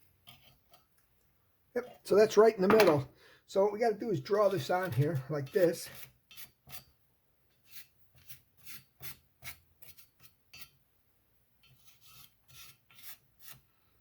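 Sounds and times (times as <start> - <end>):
marking tool rubbing on steel: 4.4 - 7.0, 7.6 - 10.8, 11.6 - 13.7.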